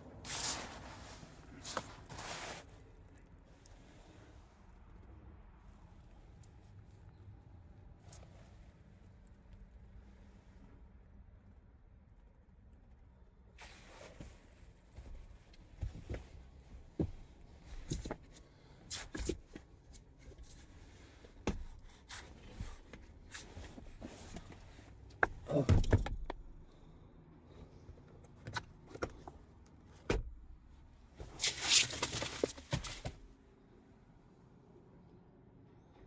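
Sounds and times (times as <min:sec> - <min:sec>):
scraping rustling bursts: 0:31.2 - 0:33.2.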